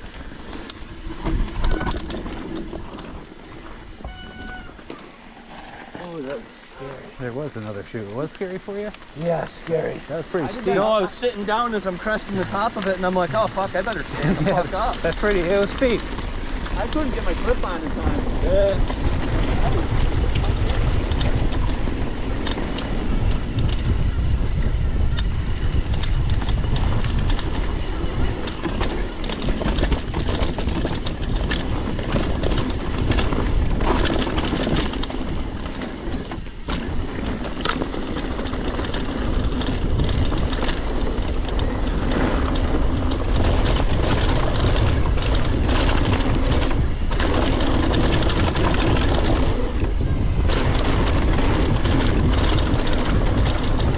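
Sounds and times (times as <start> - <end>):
wind buffeting microphone: 0.0 - 5.5, 6.2 - 53.9
bike clattering and rattling: 0.0 - 53.9
tyre noise: 0.0 - 53.9.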